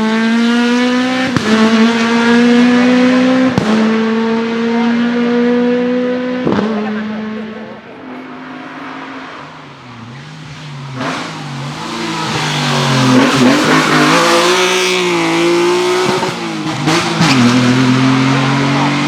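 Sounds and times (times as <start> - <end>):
race car engine revving: 0.0 - 19.0.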